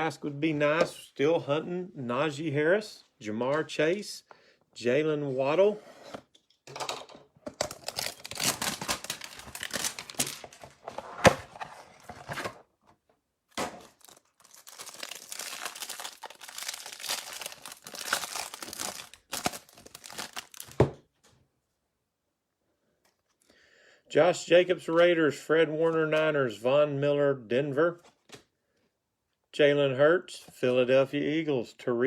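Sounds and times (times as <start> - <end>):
plastic packaging tearing and crinkling: 7.6 - 12.5, 13.5 - 20.9.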